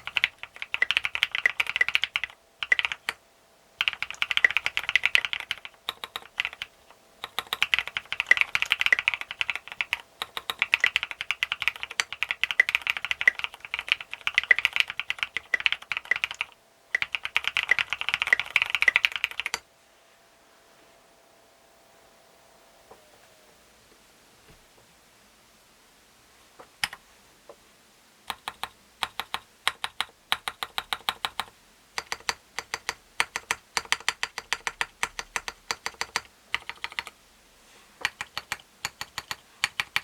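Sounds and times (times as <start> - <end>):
fast mechanical keyboard typing: 0.0 - 3.2, 3.8 - 19.6, 28.3 - 37.2, 38.0 - 40.0.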